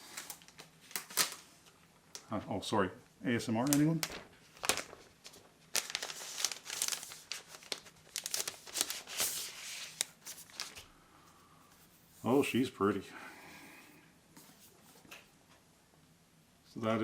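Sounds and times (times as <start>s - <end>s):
packaging wrap crinkling and tearing: 0.0s - 2.2s, 3.6s - 10.9s.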